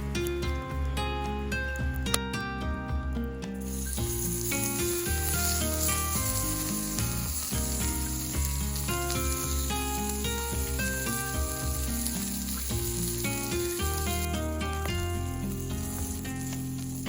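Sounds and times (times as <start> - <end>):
background music: 0.0 - 17.0
food sizzling in a pan: 3.6 - 17.0.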